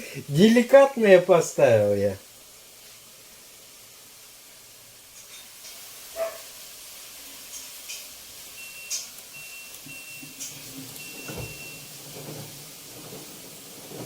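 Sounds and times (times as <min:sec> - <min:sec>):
washing machine water spraying: 0:04.8 - 0:14.0.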